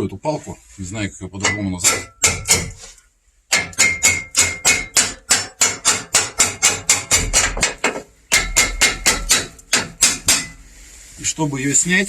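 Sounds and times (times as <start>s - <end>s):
hammer blows on metal: 3.5s - 10.6s.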